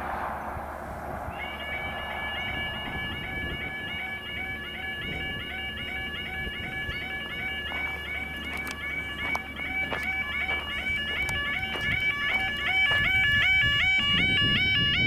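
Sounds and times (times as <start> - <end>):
warbling level crossing alarm: 1.3 - 15.0.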